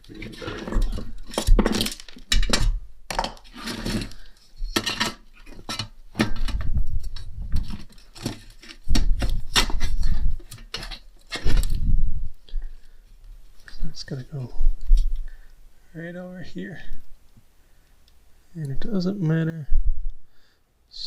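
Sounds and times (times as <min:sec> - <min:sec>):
tools and metal parts clattering: 0:00.0 - 0:11.8.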